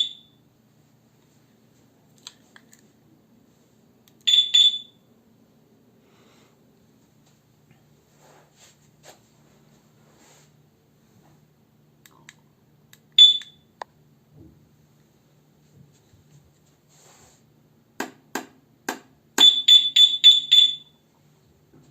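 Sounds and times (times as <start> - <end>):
alarm chirp high-pitched: 0.0 - 0.4, 4.3 - 5.0, 19.4 - 21.0.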